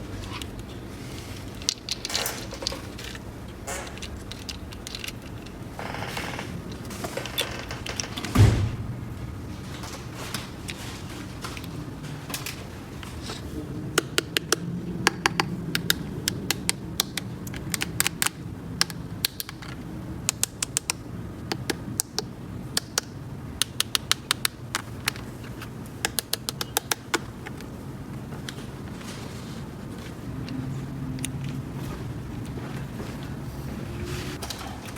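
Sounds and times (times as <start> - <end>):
steady low hum: 0.0 - 19.2
plastic toy pieces clicking: 1.5 - 5.6, 14.0 - 25.3, 26.0 - 27.6.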